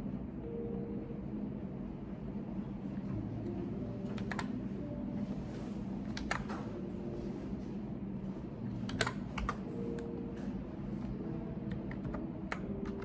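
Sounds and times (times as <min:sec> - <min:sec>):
low background hum: 0:00.0 - 0:13.0
computer keyboard keystrokes: 0:04.1 - 0:04.6, 0:06.1 - 0:06.7, 0:08.9 - 0:10.1, 0:11.7 - 0:13.0.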